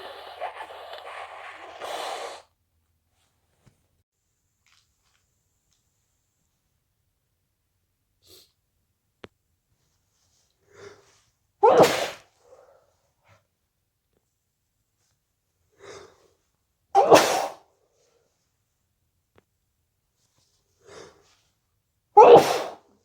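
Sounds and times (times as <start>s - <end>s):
person sneezing: 0.0s - 2.4s, 11.6s - 12.3s, 17.0s - 17.6s, 22.2s - 22.8s.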